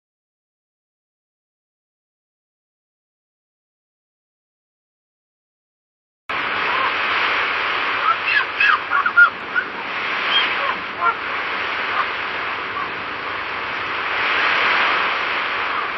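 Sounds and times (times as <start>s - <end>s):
ocean waves washing: 6.3s - 15.9s
short bird calls: 8.0s - 13.5s.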